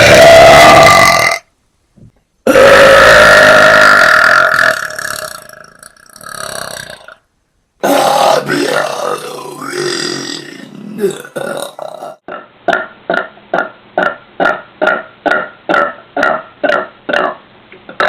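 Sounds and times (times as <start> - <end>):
woman burping loudly: 0.0 - 1.4, 2.5 - 7.2, 7.8 - 18.0.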